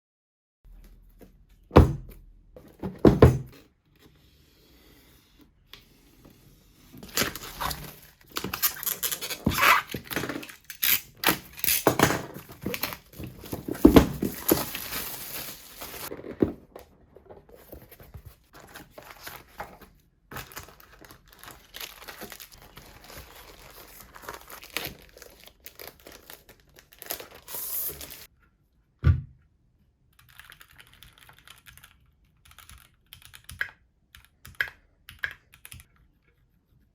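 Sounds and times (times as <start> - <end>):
paper and plastic rustling: 6.9 - 28.3.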